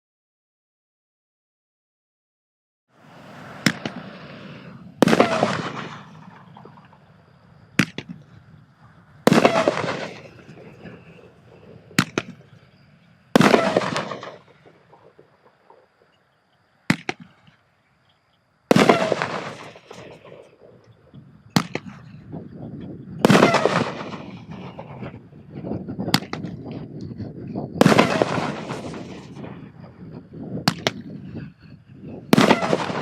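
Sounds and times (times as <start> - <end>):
fireworks bangs and bursts: 3.1 - 7.1, 7.7 - 8.3, 9.2 - 12.6, 13.3 - 15.6, 18.7 - 20.5, 21.5 - 22.1, 23.2 - 26.8, 27.6 - 29.8, 30.6 - 31.2, 32.2 - 33.0.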